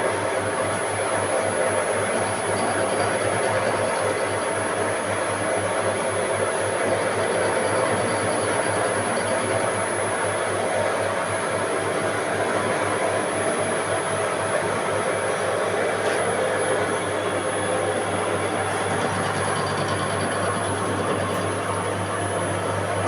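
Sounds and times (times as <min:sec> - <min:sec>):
machine tool machining metal: 0:01.7 - 0:04.5, 0:06.4 - 0:10.1, 0:18.2 - 0:22.6.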